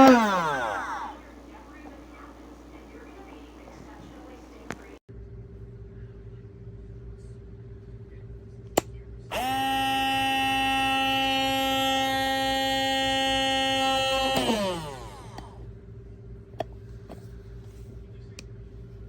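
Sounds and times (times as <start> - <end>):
coffee grinder motor humming: 0.0 - 5.0, 9.3 - 15.6.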